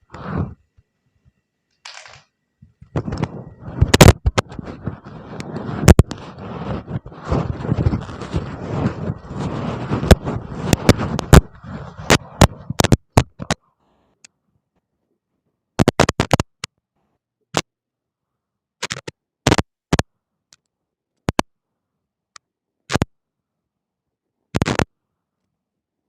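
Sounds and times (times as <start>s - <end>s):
scratchy rustling noise: 0.0s - 0.7s, 2.8s - 14.0s, 24.6s - 24.9s
sharp clicks: 18.8s - 20.6s, 22.9s - 23.1s, 24.6s - 24.9s.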